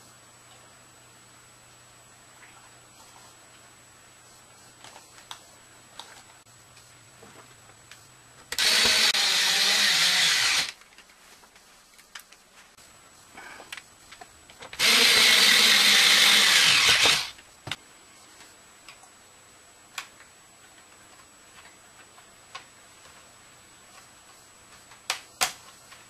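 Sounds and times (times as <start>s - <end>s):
cordless screwdriver running: 8.6s - 10.8s, 14.8s - 17.4s.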